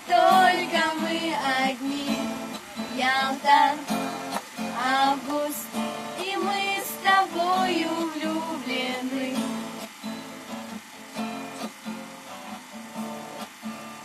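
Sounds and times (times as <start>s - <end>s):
person singing: 0.0s - 3.9s, 4.6s - 9.5s
acoustic guitar strumming: 0.0s - 14.0s.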